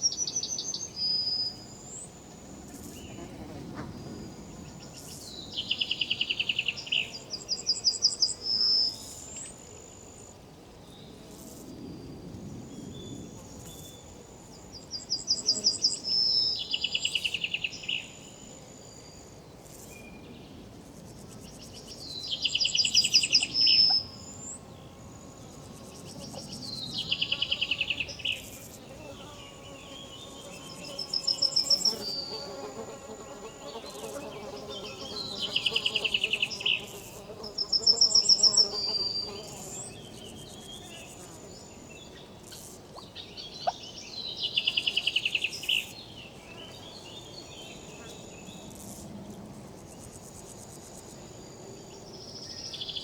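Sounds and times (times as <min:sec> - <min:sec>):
insect calling in rapid pulses: 0:30.4 - 0:33.5.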